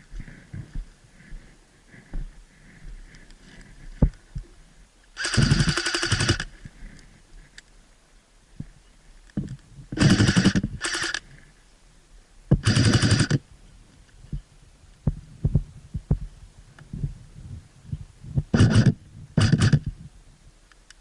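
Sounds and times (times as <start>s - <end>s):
airsoft gun bursts: 5.2s - 6.5s, 10.0s - 11.2s, 12.6s - 13.4s, 18.5s - 19.9s.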